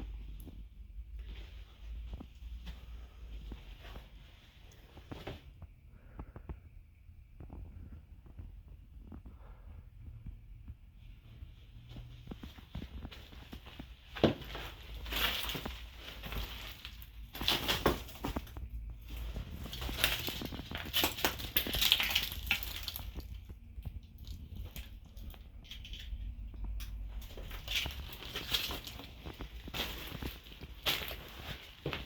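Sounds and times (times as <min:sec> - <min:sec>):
footsteps crunching underfoot: 0:11.2 - 0:32.0.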